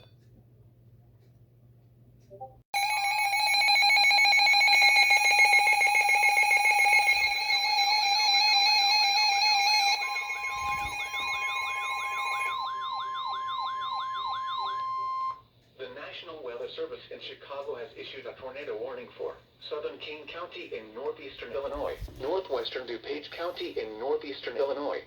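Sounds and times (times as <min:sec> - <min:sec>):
rising and falling siren tone: 0:02.8 - 0:15.4
steady multi-tone alarm: 0:02.8 - 0:15.5
steady single tone: 0:09.2 - 0:15.4.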